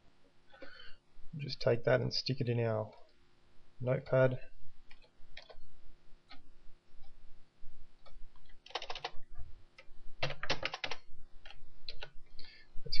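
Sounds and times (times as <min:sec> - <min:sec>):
computer keyboard typing: 0:08.4 - 0:09.2, 0:10.2 - 0:11.1.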